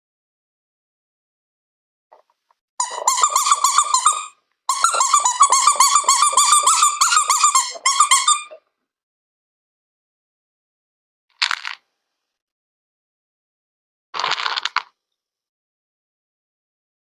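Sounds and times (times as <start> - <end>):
rapid high-pitched squeaks: 2.8 - 8.6.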